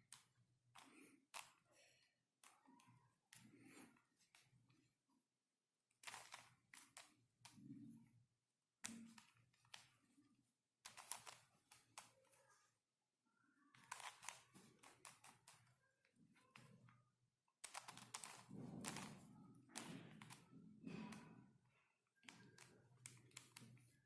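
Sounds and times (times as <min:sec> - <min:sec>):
plastic puzzle clicking and rattling: 0:05.9 - 0:07.7, 0:10.8 - 0:12.6, 0:13.7 - 0:16.9, 0:17.6 - 0:21.3, 0:22.2 - 0:24.0.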